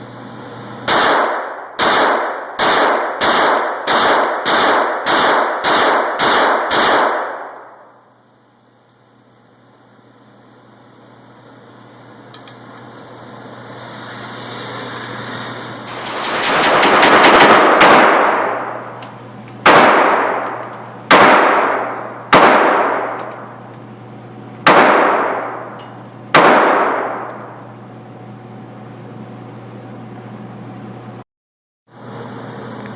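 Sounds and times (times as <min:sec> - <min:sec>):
low electrical hum: 0:00.0 - 0:31.2
pistol shots: 0:00.9 - 0:07.6, 0:15.9 - 0:23.6, 0:24.6 - 0:27.6.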